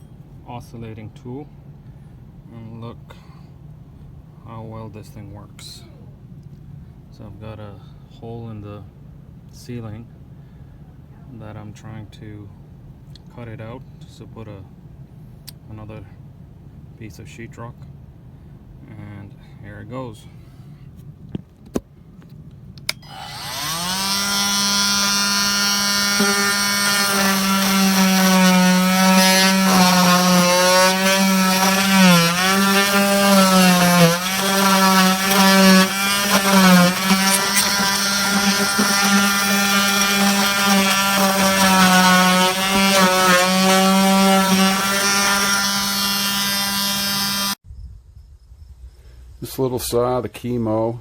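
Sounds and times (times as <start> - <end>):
oscillating multi-tool cutting drywall: 23.0 - 47.6.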